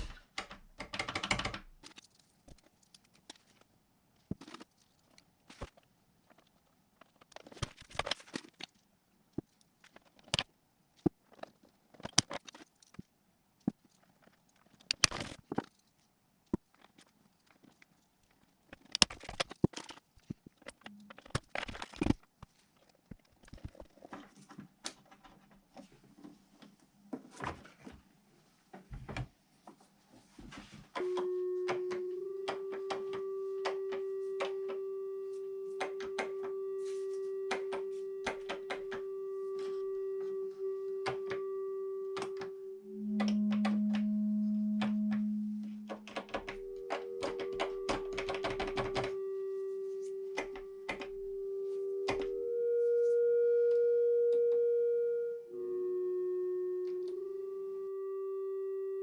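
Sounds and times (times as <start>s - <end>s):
scattered clicks and taps: 0.0s - 3.4s, 45.9s - 49.2s
steady feedback tone: 31.0s - 59.0s.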